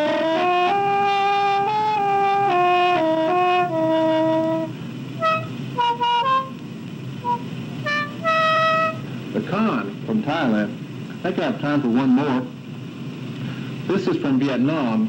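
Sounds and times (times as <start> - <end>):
bamboo mouth organ playing: 0.0 - 10.0.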